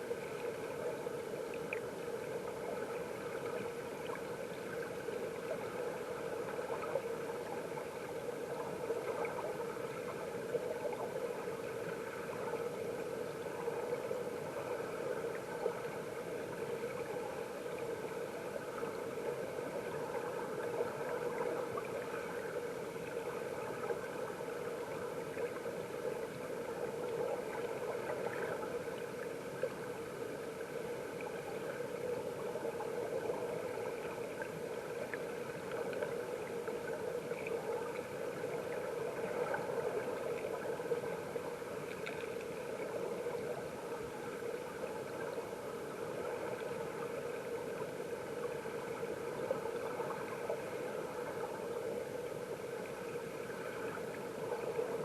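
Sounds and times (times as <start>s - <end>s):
muffled underwater water rushing: 0.0s - 55.0s
faint clicks and ticks: 38.8s - 43.6s.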